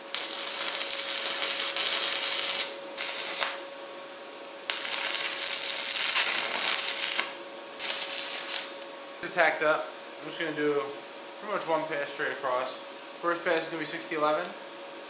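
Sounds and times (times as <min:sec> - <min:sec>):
welding arc crackling: 0:00.0 - 0:03.7, 0:04.7 - 0:08.9
faint steady hum: 0:00.0 - 0:15.0.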